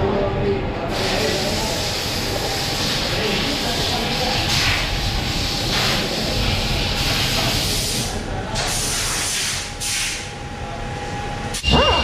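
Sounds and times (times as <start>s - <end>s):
loud hissing spray: 0.9s - 10.3s.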